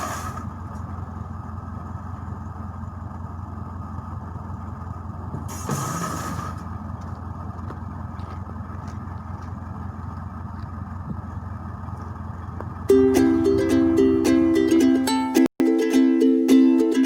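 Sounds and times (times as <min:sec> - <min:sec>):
short hiss: 0:00.0 - 0:00.5, 0:05.5 - 0:06.7
diesel engine idling: 0:00.0 - 0:15.5.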